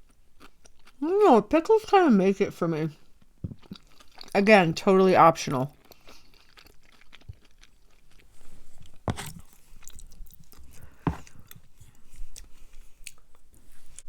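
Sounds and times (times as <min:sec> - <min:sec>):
person chewing food: 0:00.0 - 0:01.0, 0:03.0 - 0:04.4, 0:05.7 - 0:14.0
crunching bites: 0:05.8 - 0:11.6.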